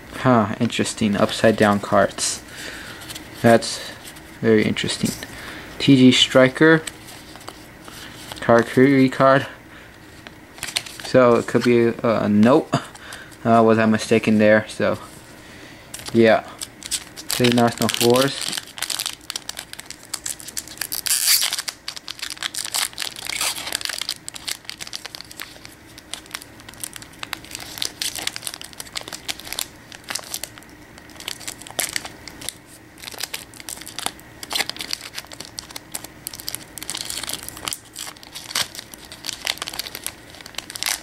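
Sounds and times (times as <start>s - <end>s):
foil wrapper crinkling and tearing: 10.2s - 11.8s, 15.9s - 41.0s.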